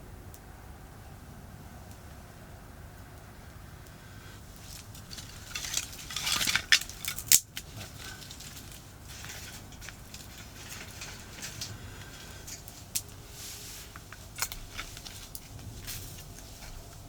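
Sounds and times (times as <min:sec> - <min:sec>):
distant highway traffic rumble: 0:00.0 - 0:17.0
rustling and scraping handling noise: 0:04.4 - 0:17.0.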